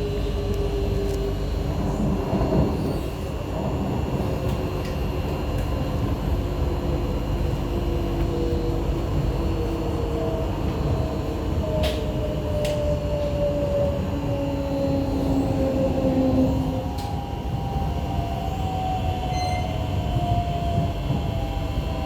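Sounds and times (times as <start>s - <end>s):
metro train rumble and whine: 0.0s - 22.0s.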